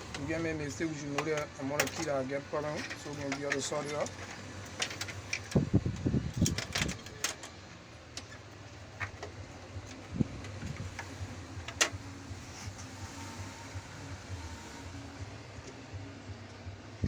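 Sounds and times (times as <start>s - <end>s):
clicks and knocks handling keyboard parts: 1.1s - 5.6s, 6.4s - 11.1s.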